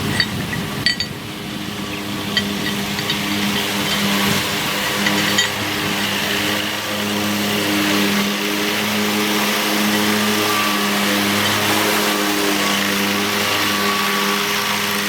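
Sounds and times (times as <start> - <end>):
light metallic clinks: 0.0 - 6.0.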